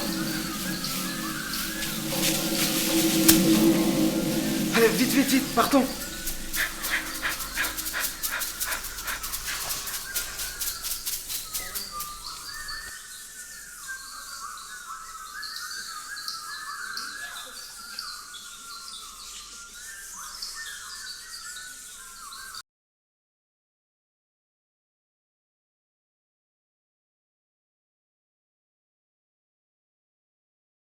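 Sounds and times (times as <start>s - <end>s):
birdlike chirps: 0.0s - 22.6s.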